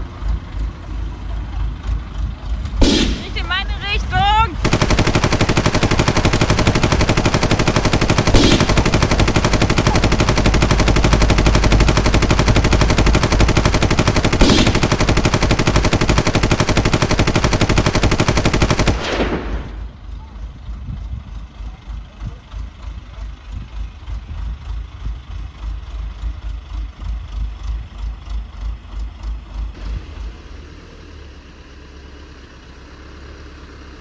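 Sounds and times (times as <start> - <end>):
rapid automatic gunfire: 2.8 - 19.9.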